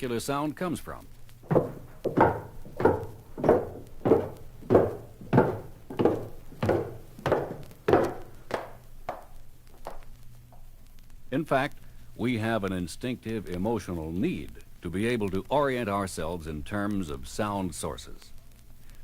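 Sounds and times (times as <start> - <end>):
hard-soled footsteps walking: 1.3 - 10.7.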